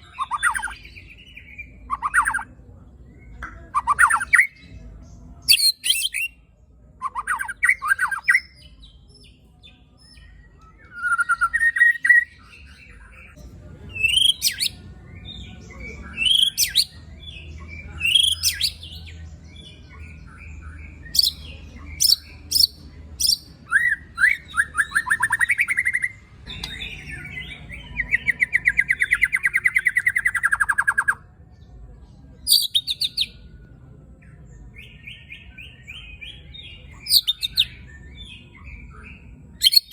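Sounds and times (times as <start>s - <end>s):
songbird singing harsh whistles: 39.6s - 39.9s.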